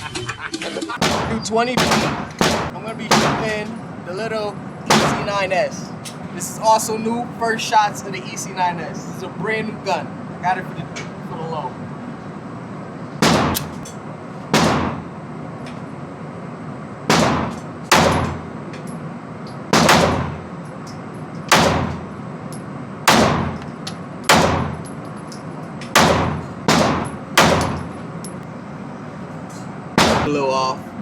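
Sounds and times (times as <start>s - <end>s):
pistol shots with echo: 1.0s - 3.6s, 4.9s - 5.3s, 14.5s - 15.0s, 17.1s - 18.4s, 19.7s - 20.4s, 21.5s - 22.1s, 23.1s - 23.6s, 24.3s - 24.8s, 26.0s - 27.9s, 30.0s - 30.3s.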